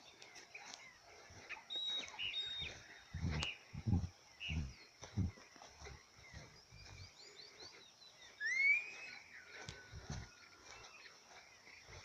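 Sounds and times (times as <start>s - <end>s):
birds chirping and whistling: 0.0s - 12.0s
low rough bursts: 3.2s - 5.4s.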